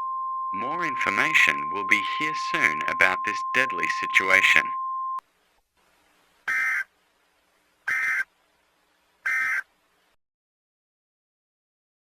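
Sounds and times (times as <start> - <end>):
steady alert tone: 0.6 - 4.8.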